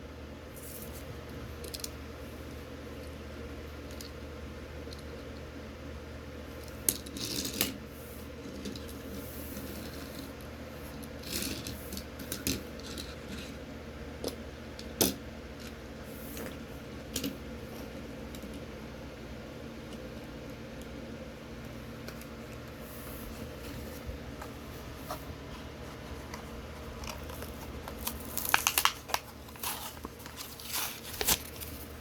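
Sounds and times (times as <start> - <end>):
steady low hum: 0.0 - 32.0
toy car and packaging clicks: 27.0 - 30.4.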